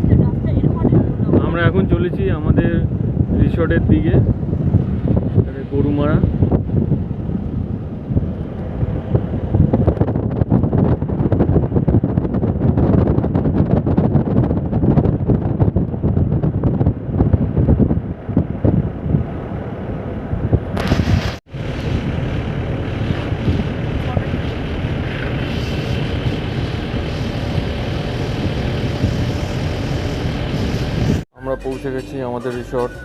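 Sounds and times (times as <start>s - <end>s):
wind buffeting microphone: 0.0s - 31.3s
car rumbling on road: 14.6s - 31.6s.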